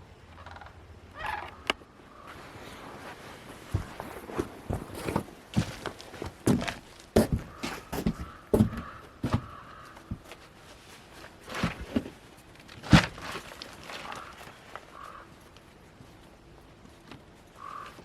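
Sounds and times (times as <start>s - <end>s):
handling knocks and scrapes: 2.3s - 14.9s.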